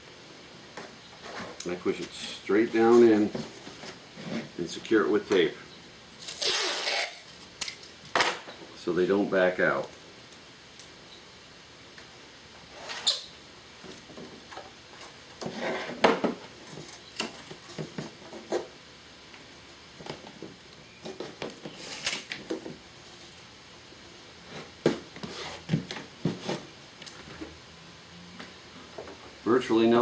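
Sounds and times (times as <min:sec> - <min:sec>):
masking tape rasps: 0:06.2 - 0:07.7.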